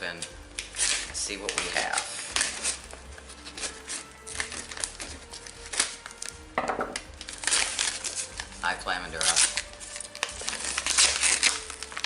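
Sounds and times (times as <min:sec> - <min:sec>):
paper crackling: 0:00.0 - 0:06.4, 0:07.0 - 0:12.0
background music: 0:00.0 - 0:12.0
scissors snipping paper: 0:00.2 - 0:06.3, 0:07.2 - 0:08.6, 0:09.2 - 0:12.0.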